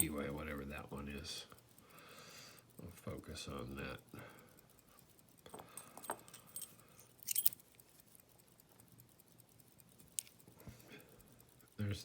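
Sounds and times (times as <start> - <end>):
keys jangling against padlock: 5.7 - 7.7.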